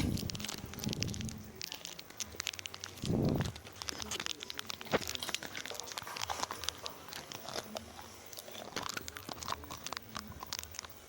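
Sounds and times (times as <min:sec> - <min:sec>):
crunching and crinkling clicks: 0:00.0 - 0:11.0.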